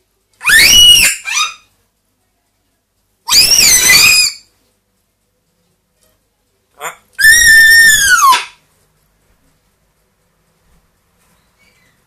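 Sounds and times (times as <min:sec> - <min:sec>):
parrot screaming: 0:00.4 - 0:01.7, 0:03.3 - 0:04.5, 0:06.8 - 0:08.6.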